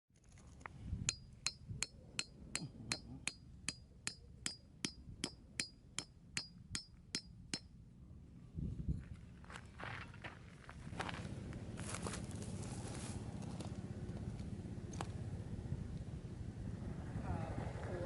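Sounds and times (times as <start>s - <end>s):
sharp metallic ticks: 1.1s - 7.7s.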